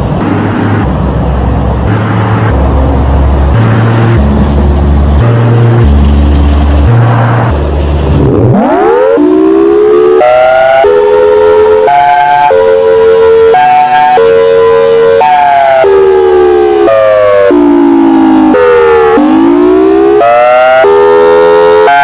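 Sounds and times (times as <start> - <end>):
pulsing low rumble: 0.0 - 11.8
warning siren winding up: 1.9 - 22.0.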